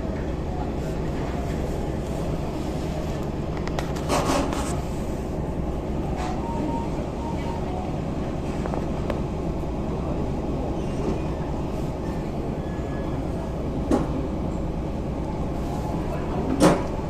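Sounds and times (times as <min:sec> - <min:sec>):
cruise ship engine rumble: 0:00.0 - 0:17.0.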